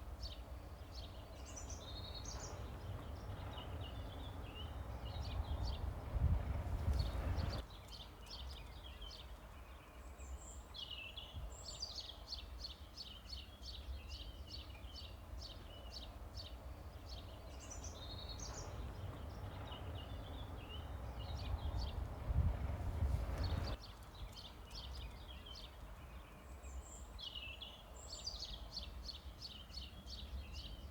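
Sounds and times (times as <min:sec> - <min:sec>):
small birds chirping: 0:00.1 - 0:30.9
steady low rumble: 0:01.5 - 0:07.6, 0:17.0 - 0:23.8.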